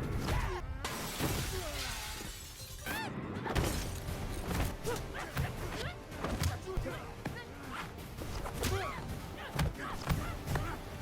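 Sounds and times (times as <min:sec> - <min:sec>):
film score music: 0:00.0 - 0:11.0
glass shattering: 0:00.9 - 0:03.0.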